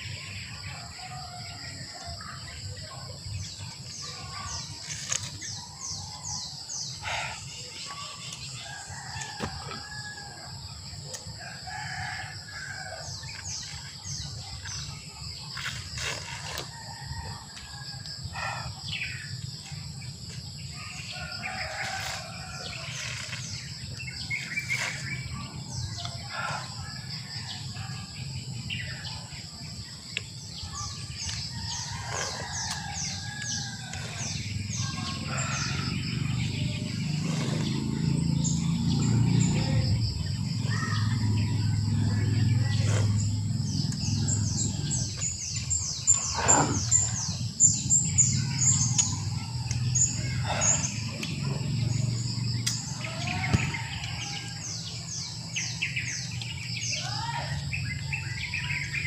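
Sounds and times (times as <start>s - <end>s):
birds chirping and calling: 0.0s - 59.0s
rooster crowing: 52.9s - 55.0s.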